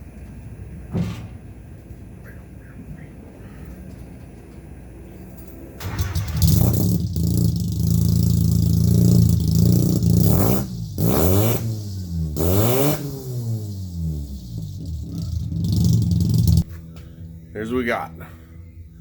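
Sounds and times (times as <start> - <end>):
car engine starting and revving: 5.8 - 16.7.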